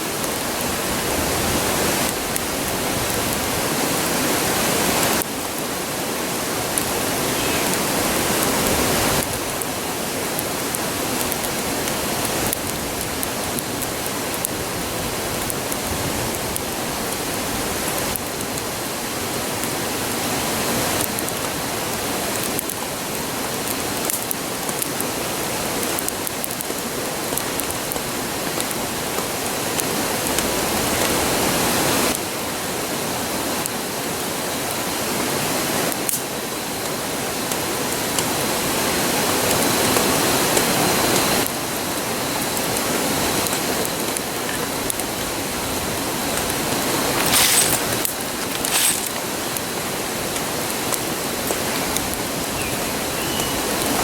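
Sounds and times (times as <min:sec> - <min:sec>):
campfire crackles: 0:00.0 - 0:54.0
river rushing: 0:28.2 - 0:54.0.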